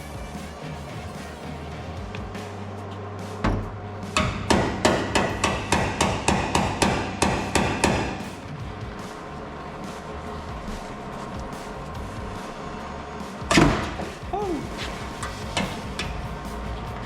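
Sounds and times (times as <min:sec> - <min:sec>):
background music: 0:00.0 - 0:17.0
hammer striking metal: 0:03.4 - 0:08.5.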